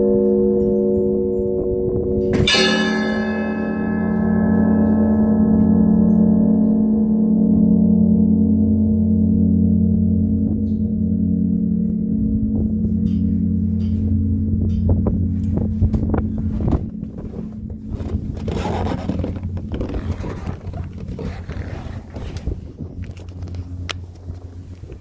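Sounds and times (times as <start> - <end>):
wind rustle on microphone: 0.0 - 3.7, 9.3 - 25.0
large bell hum: 0.0 - 25.0.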